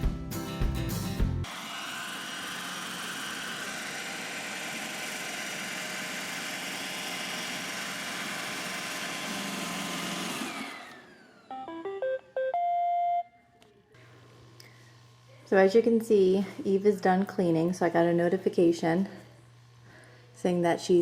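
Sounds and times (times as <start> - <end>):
robot vacuum humming: 1.4 - 12.0.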